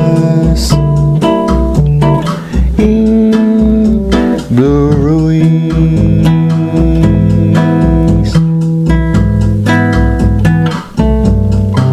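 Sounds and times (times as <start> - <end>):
bass line: 0.0 - 11.9
plucked guitar chords: 0.0 - 11.9.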